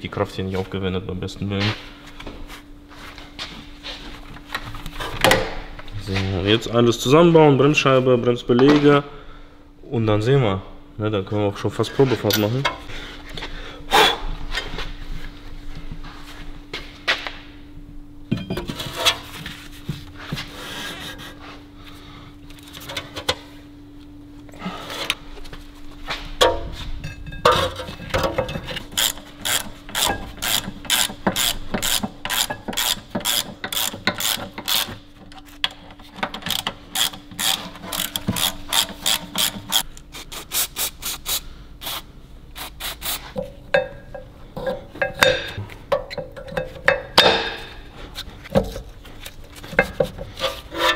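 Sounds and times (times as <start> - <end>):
steady low hum: 0.0 - 50.9
ratchet wrench clicking: 29.0 - 35.0, 36.4 - 39.9.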